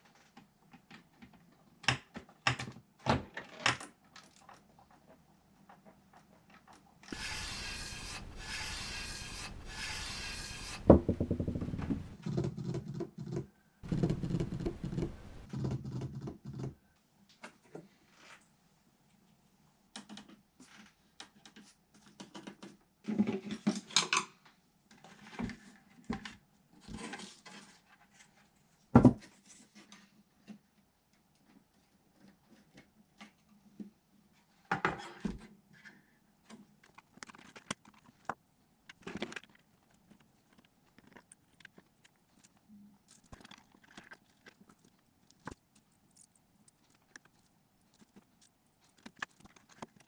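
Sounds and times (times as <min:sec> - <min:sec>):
dense hiss: 0:07.2 - 0:11.0.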